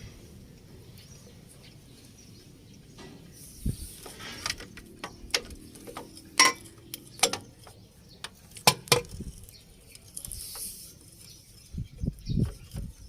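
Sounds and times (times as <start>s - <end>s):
sharp metallic clinks and knocks: 4.4s - 10.4s.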